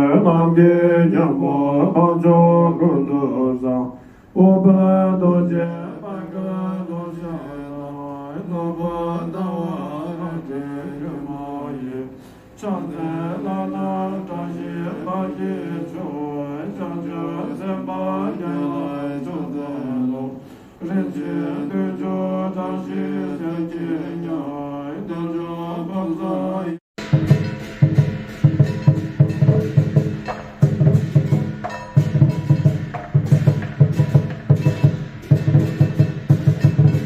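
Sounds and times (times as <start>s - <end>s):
person chanting: 0.0s - 26.8s.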